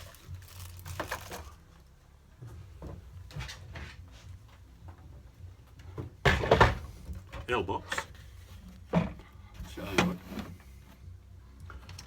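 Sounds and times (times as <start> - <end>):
wooden insert knocking and scraping: 6.0 - 11.0.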